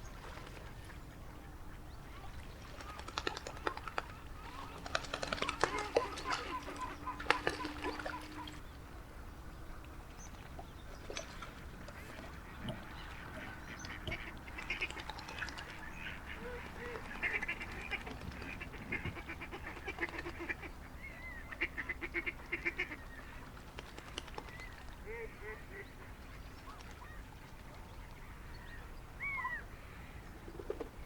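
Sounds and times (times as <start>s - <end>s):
ducks calling: 2.8s - 8.6s, 11.1s - 23.1s.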